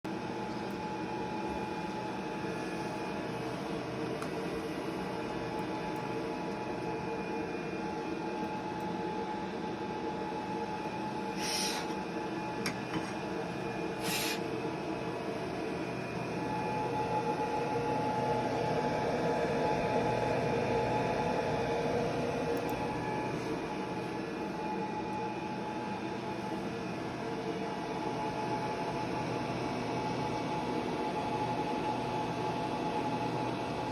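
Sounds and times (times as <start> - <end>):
machine fan hum with tones: 0.1 - 33.9
short hisses: 14.0 - 14.4.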